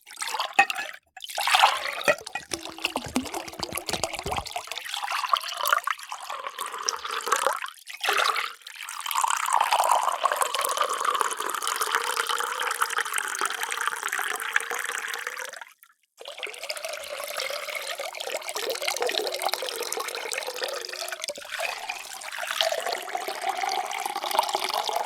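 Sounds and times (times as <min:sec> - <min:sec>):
water pouring into container: 0:00.2 - 0:13.2, 0:16.2 - 0:25.0.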